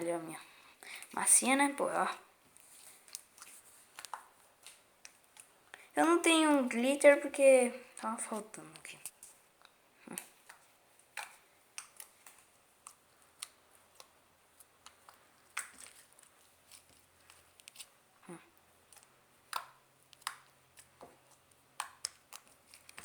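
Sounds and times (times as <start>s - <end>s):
small objects clicking and tapping: 3.0s - 5.8s, 8.0s - 23.0s.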